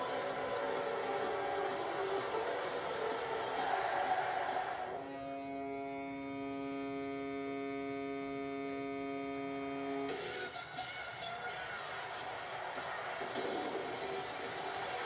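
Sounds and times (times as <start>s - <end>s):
goal horn blast: 5.0s - 8.7s.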